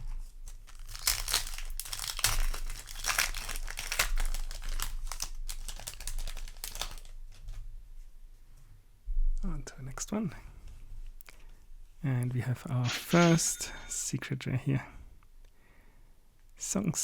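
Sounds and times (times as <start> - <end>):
foil wrapper crinkling: 0.4 - 7.6.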